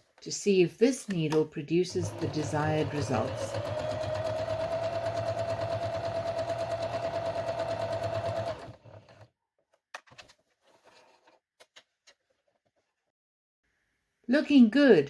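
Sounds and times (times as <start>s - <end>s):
sewing machine stitching: 1.9s - 9.3s.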